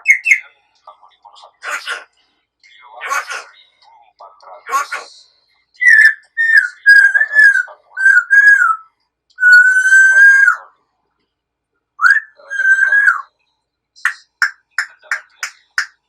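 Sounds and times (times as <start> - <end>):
parrot chirps: 0.0 - 0.5, 5.8 - 10.7, 12.0 - 13.4
parrot whistling clear notes: 9.4 - 10.6, 12.0 - 13.3.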